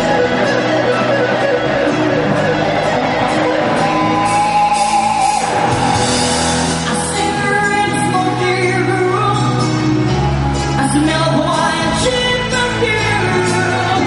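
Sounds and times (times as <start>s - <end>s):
band playing a song: 0.0s - 14.0s
person singing: 6.8s - 10.0s, 10.8s - 14.0s.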